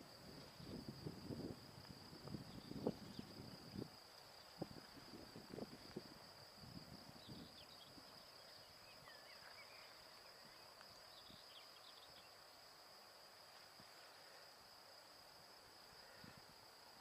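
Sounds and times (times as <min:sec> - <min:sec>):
high-pitched insect trill: 0:00.0 - 0:17.0
faint bird chirps: 0:07.2 - 0:12.4.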